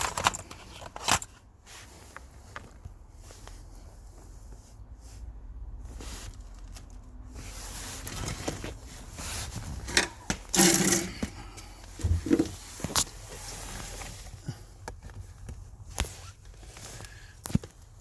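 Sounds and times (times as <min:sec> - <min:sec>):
rustling: 0:05.8 - 0:14.6.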